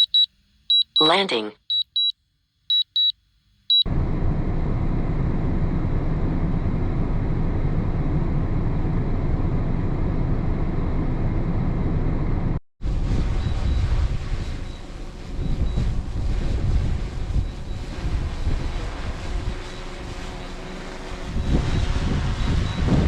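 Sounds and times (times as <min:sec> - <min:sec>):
short high beeps: 0:00.0 - 0:02.1, 0:02.7 - 0:03.1
wind buffeting microphone: 0:12.8 - 0:23.0.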